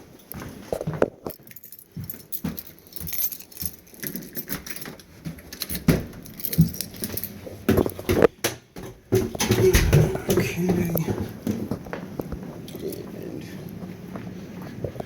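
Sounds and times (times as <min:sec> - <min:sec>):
clicks knocks and rattling: 0:02.3 - 0:11.6
loud thumps: 0:09.2 - 0:11.0.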